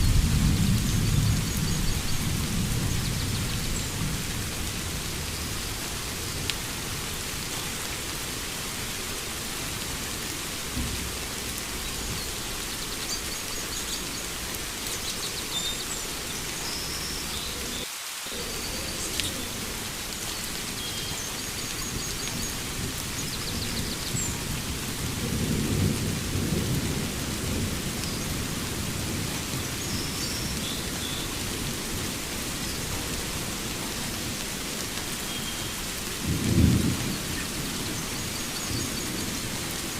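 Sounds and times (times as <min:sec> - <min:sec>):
low rolling thunder: 0:00.0 - 0:07.1, 0:21.4 - 0:35.0, 0:36.1 - 0:39.9
steady rain: 0:00.0 - 0:39.9.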